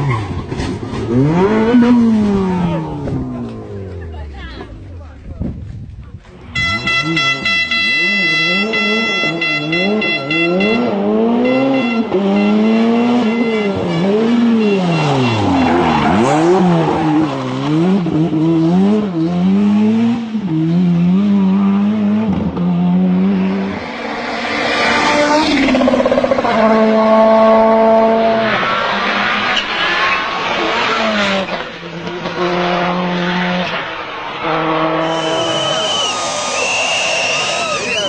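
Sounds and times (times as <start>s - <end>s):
rally car engine revving: 0.0s - 5.6s, 6.2s - 38.0s
burst of hiss: 35.1s - 37.6s.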